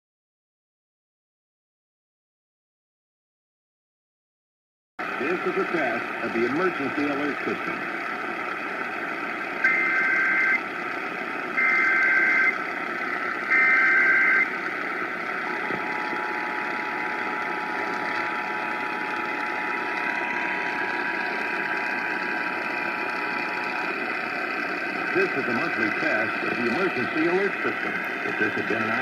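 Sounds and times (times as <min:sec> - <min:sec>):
radio background hiss: 0:05.1 - 0:07.9, 0:24.9 - 0:29.0
data tone bursts: 0:09.6 - 0:10.6, 0:11.6 - 0:12.6, 0:13.4 - 0:14.5
two-tone attention signal: 0:09.6 - 0:10.6, 0:11.6 - 0:12.6, 0:13.4 - 0:14.5.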